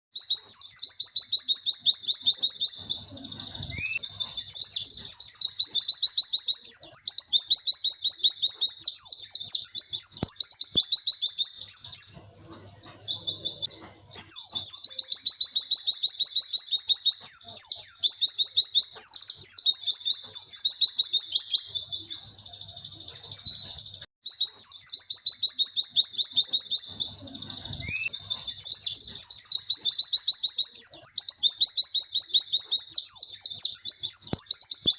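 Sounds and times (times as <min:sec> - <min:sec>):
bird singing high chirps: 0:00.1 - 0:34.9.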